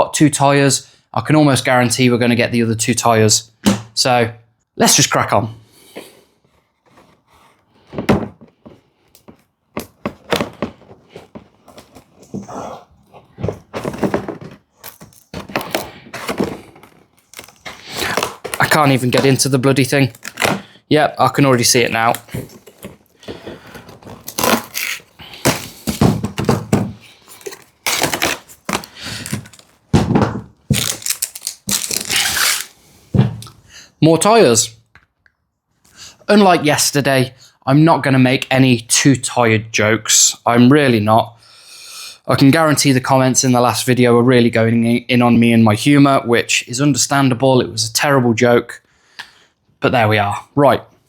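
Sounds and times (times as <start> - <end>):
cardboard box knocks and thunks: 7.9 - 8.8, 9.8 - 12.4, 13.4 - 14.6, 25.5 - 27.0, 29.9 - 30.5
cardboard box being forced open: 9.8 - 12.6, 13.2 - 19.4.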